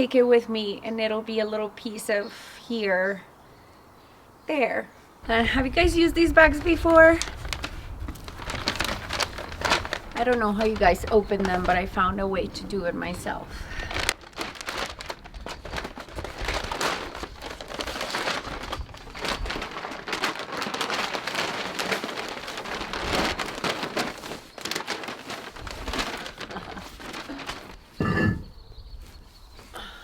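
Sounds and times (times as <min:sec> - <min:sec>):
plastic bag crinkling: 0:05.4 - 0:28.1.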